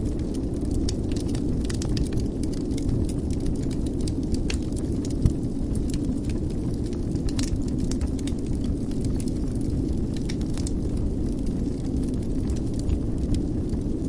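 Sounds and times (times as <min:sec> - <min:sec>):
wood fire crackling: 0:00.0 - 0:14.0.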